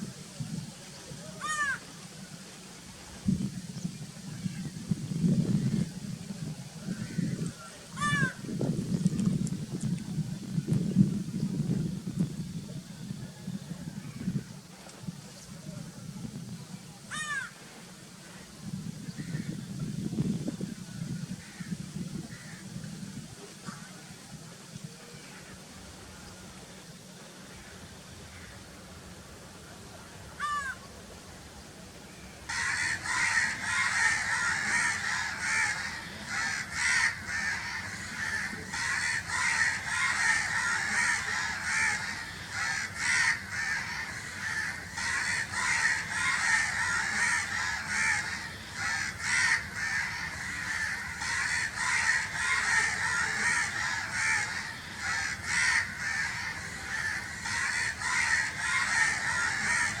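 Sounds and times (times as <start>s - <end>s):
crows cawing: 1.4s - 1.8s, 17.1s - 17.6s, 30.4s - 30.8s, 32.5s - 60.0s.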